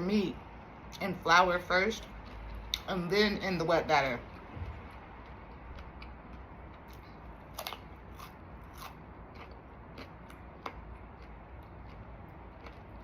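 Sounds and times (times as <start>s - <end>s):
chewing crispy fried chicken: 4.3s - 13.0s.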